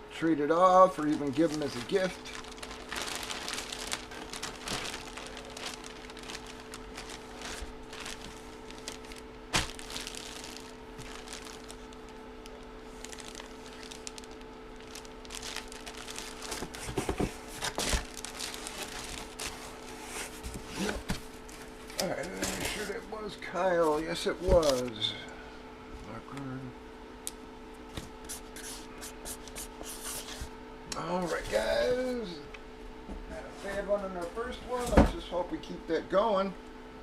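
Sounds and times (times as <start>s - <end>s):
low electrical hum: 0.0s - 37.0s
plastic packaging crinkling: 1.0s - 20.5s.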